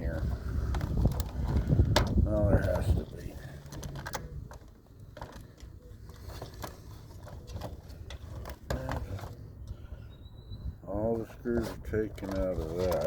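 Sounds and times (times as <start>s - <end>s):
hand tools and plastic parts clicking: 0.6s - 9.8s.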